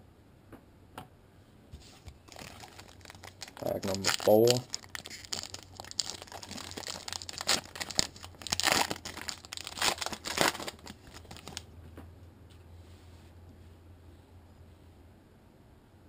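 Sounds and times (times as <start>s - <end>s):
card pack wrapper crinkling and tearing: 2.2s - 11.7s.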